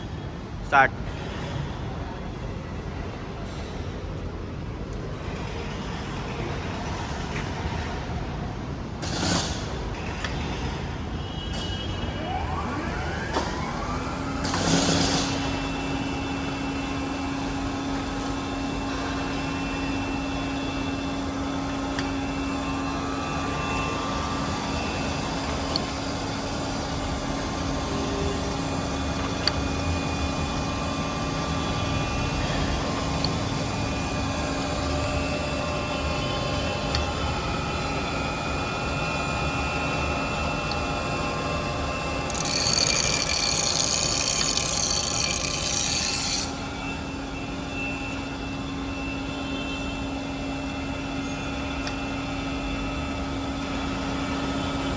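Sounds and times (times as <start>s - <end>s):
grinder machine running: 42.3s - 46.5s.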